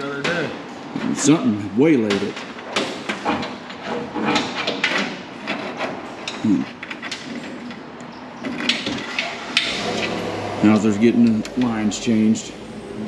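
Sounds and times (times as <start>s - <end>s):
people talking: 0.0s - 2.4s, 6.4s - 6.7s, 10.6s - 13.0s
tools and parts clattering: 2.0s - 11.7s.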